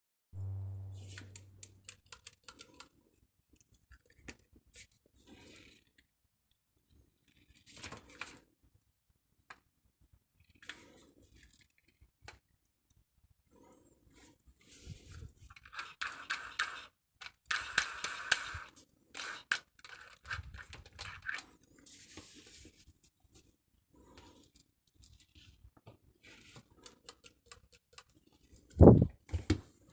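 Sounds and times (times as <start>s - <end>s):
low hum: 0.3s - 2.0s
drill handling clicks and scrapes: 15.1s - 21.5s.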